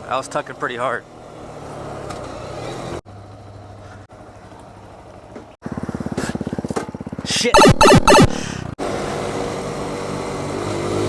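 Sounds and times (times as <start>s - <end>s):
motorcycle engine running: 5.6s - 7.4s.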